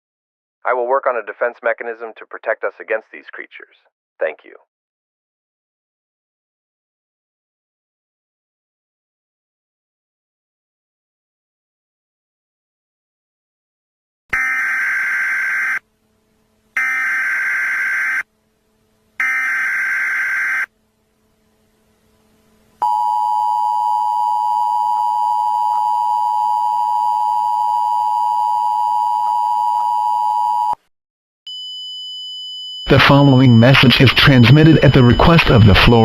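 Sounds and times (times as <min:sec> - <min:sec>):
two-tone attention signal: 0:31.5 - 0:36.0
digital data header bursts: 0:33.0 - 0:36.0.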